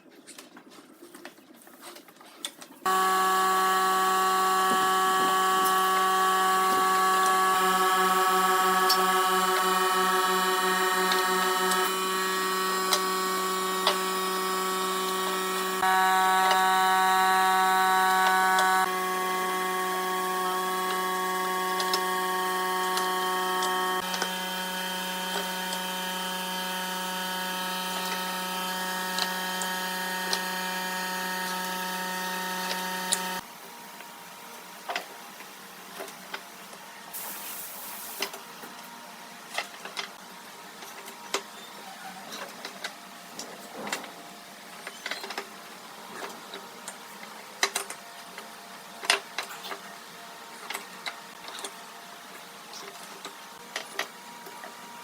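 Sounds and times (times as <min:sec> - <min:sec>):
small motor humming: 0:02.9 - 0:33.5.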